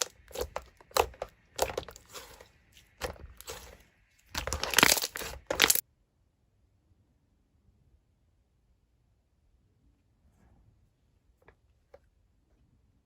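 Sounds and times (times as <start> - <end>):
slime crackling and popping: 0.0 - 5.8.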